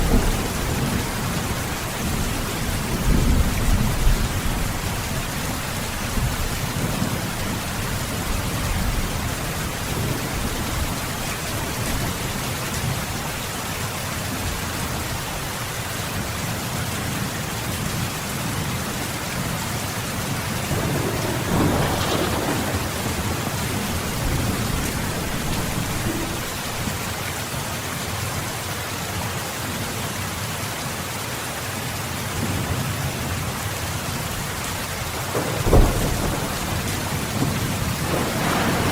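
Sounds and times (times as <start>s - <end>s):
low rumbling thunder: 0.0s - 13.0s, 20.2s - 27.1s, 35.2s - 38.9s
steady rain falling: 0.0s - 38.9s.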